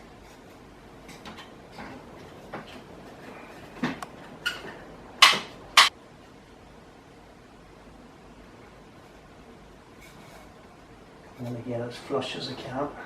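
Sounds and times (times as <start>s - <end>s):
sharp clacks: 5.2s - 5.9s.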